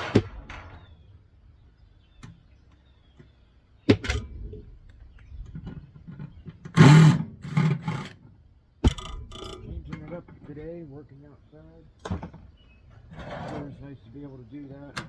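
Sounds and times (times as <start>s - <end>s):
knocks from microwave parts: 8.8s - 10.2s
scraping clatter: 12.9s - 14.0s.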